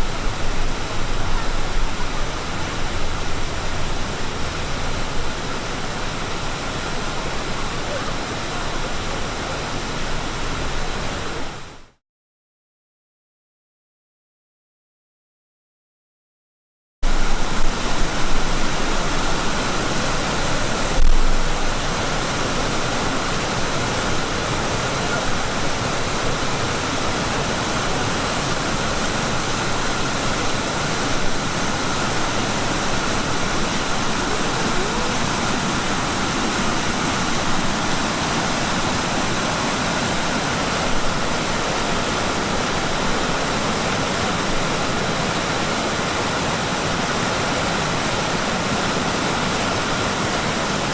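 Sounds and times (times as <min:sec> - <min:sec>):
waterfall rushing: 0:00.0 - 0:12.0, 0:17.0 - 0:50.9.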